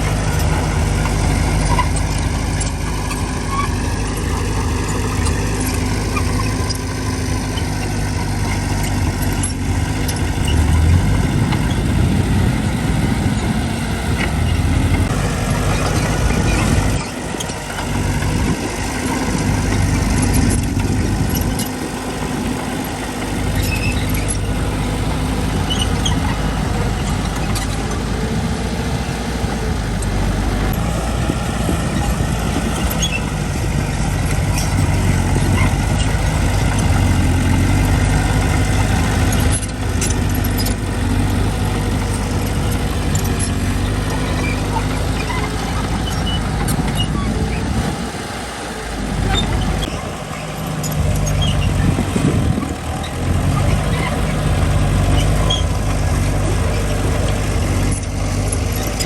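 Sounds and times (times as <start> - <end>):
diesel engine rumbling: 0.0 - 59.0.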